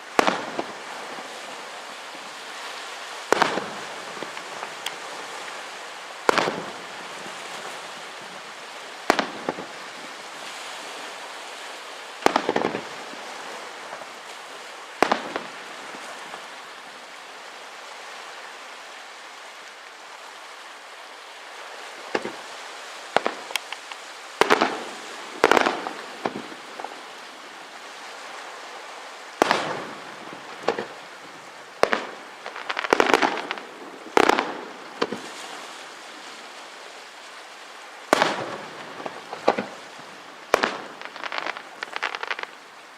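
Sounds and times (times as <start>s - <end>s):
steady hiss: 0.0s - 42.9s
fireworks bursting with bangs: 0.1s - 1.2s, 3.3s - 5.0s, 6.2s - 7.8s, 9.1s - 9.8s, 12.2s - 13.2s, 15.0s - 16.1s, 22.1s - 22.5s, 23.1s - 27.5s, 29.4s - 35.8s, 38.1s - 42.6s.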